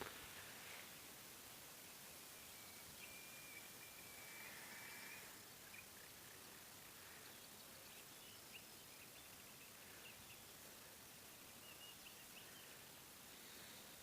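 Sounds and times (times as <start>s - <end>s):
faint hiss: 0.0s - 14.0s
faint bird chirps: 1.7s - 14.0s.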